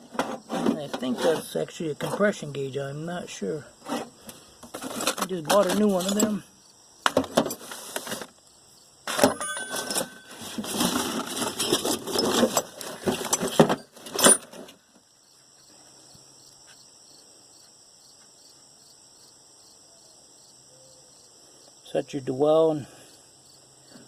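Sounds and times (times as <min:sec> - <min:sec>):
crickets chirping: 0:00.0 - 0:24.0
metal hand tools clattering: 0:04.7 - 0:06.4, 0:09.1 - 0:14.7.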